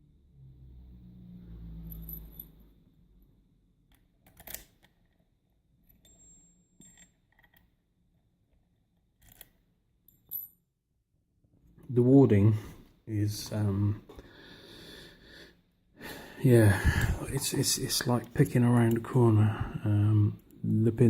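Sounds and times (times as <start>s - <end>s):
lock and key clicking: 3.9s - 5.2s.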